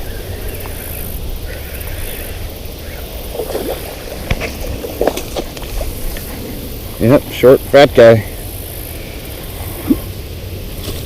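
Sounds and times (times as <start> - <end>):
wind rumbling on microphone: 0.0 - 11.0
fish splashing in water: 2.8 - 6.7.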